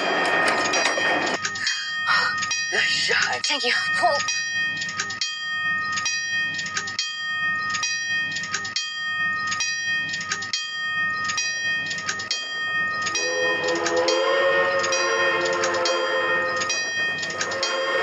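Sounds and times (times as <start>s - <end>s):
bell ringing steadily: 0.0s - 18.0s
multi-note train horn: 13.1s - 18.0s.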